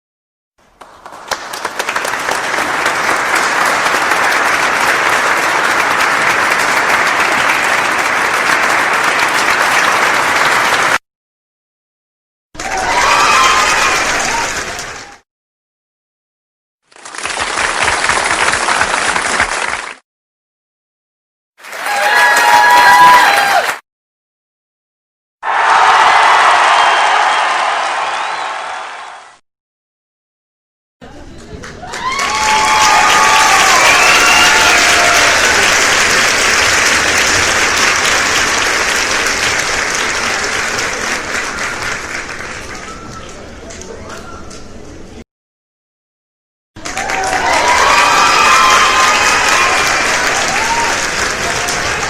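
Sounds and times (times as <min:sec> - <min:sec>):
crowd clapping: 0:00.6 - 0:11.0, 0:12.6 - 0:15.2, 0:16.9 - 0:20.0, 0:21.6 - 0:23.8, 0:25.4 - 0:29.4, 0:31.1 - 0:44.2, 0:46.8 - 0:52.0
crowd cheering: 0:00.8 - 0:11.0, 0:12.6 - 0:15.2, 0:21.6 - 0:23.8, 0:25.4 - 0:29.4, 0:31.6 - 0:44.3, 0:46.8 - 0:52.0.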